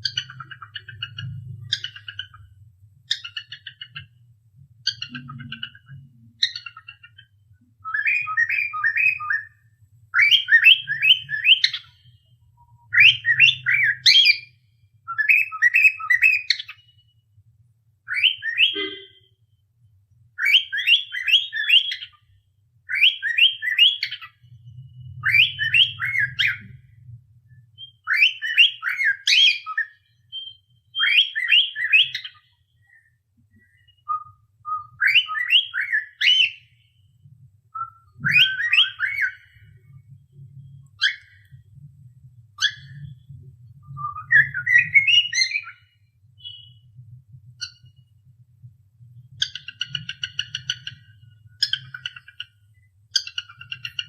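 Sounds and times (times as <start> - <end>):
cockatiel whistling a tune: 7.8 - 9.5, 10.1 - 11.9, 12.9 - 17.0, 18.1 - 19.2, 20.4 - 22.2, 22.9 - 24.4, 25.2 - 26.7, 27.8 - 32.5, 33.7 - 36.7, 37.7 - 39.6, 41.0 - 41.4, 42.6 - 43.1, 43.8 - 46.8, 51.6 - 52.3.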